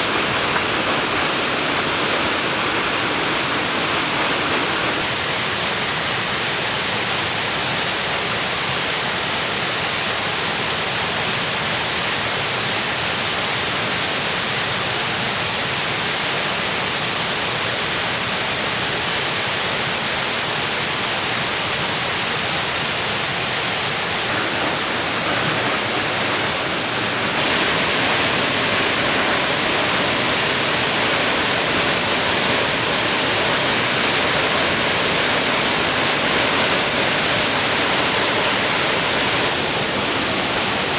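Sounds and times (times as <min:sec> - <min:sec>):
waterfall roaring: 0:00.0 - 0:05.2, 0:24.2 - 0:40.9.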